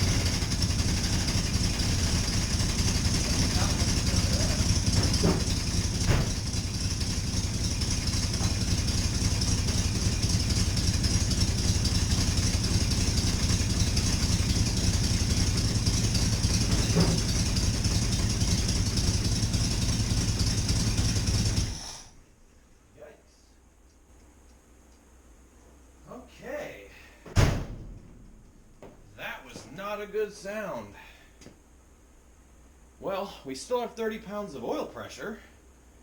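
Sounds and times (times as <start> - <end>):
rapid mechanical knocking: 0.0 - 21.9
engine running steadily: 0.0 - 22.3.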